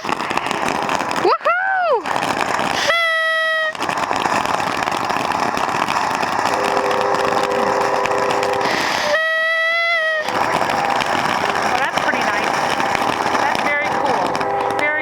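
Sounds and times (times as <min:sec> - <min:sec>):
fountain firework hissing and crackling: 0:00.0 - 0:15.0
whistling firework shrill whistle: 0:00.0 - 0:15.0.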